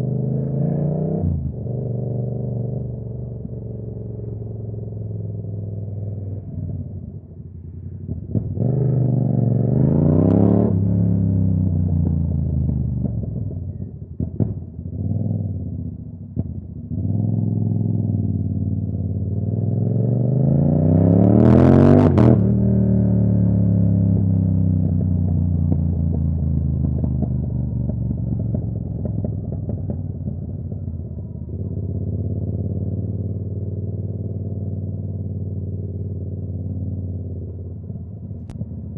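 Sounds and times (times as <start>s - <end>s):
motorcycle engine revving: 8.0s - 38.9s.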